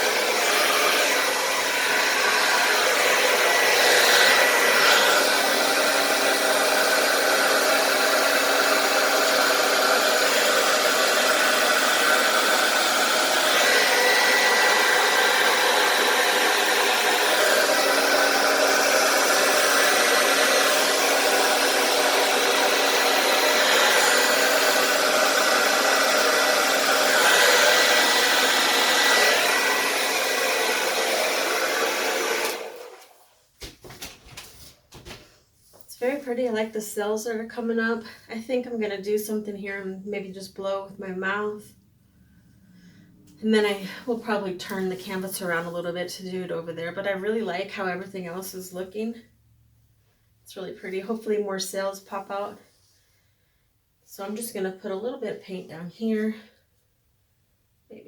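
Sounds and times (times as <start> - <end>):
hair dryer running: 0.0 - 35.2.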